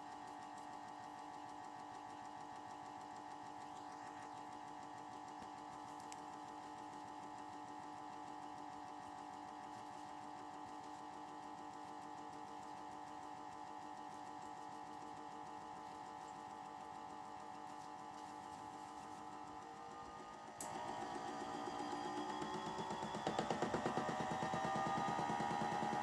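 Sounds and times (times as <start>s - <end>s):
small electric motor whining: 19.6s - 26.0s.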